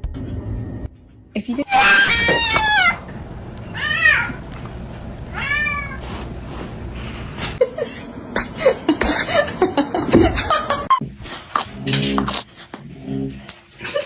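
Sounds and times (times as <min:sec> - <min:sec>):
cat meowing: 0:01.7 - 0:03.1, 0:03.7 - 0:04.4, 0:05.3 - 0:06.0.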